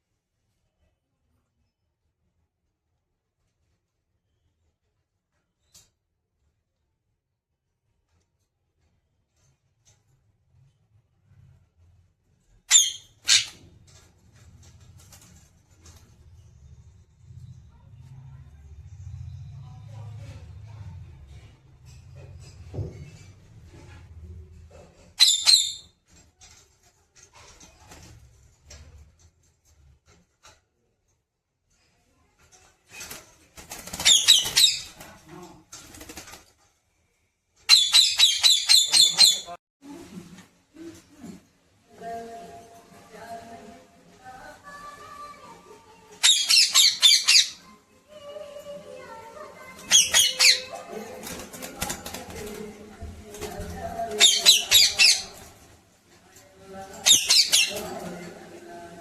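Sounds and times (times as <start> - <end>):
parrot chirping: 12.7 - 13.7, 25.2 - 25.9, 34.0 - 35.0, 37.7 - 39.6, 46.2 - 47.8, 49.8 - 50.9, 54.1 - 55.6, 57.0 - 57.9.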